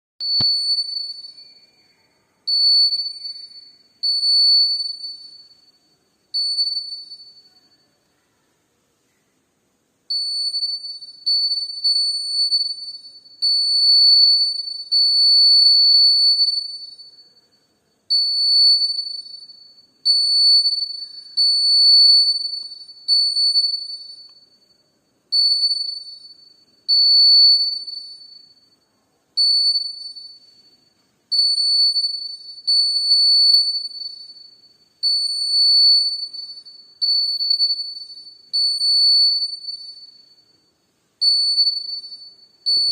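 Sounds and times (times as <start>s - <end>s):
electronic alarm tone: 42.7s - 42.9s.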